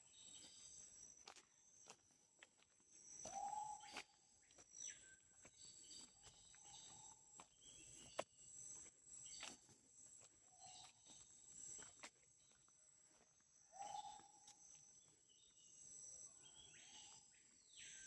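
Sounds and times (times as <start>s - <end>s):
whistled bird calls: 3.3s - 4.0s, 13.7s - 14.4s.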